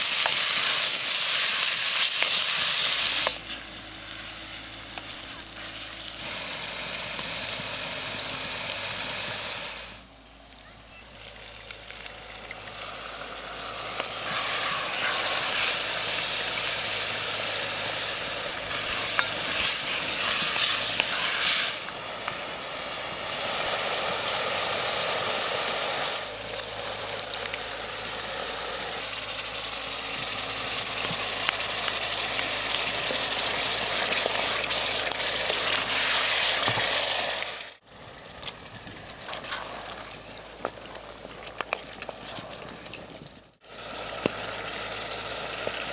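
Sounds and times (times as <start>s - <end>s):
food sizzling in a hot pan: 0.0s - 10.0s, 11.6s - 37.8s.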